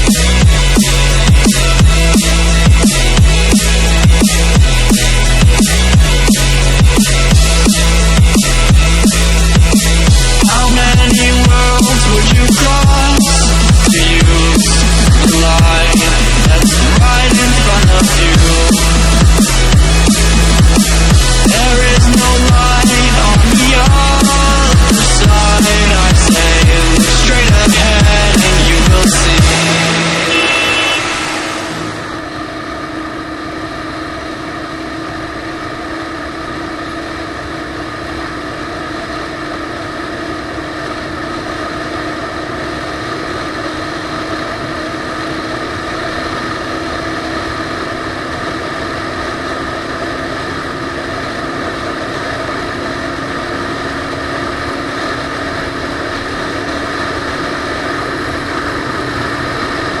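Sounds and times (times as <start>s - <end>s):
background music: 0.0s - 32.4s
muffled motorcycle engine running: 0.0s - 60.0s.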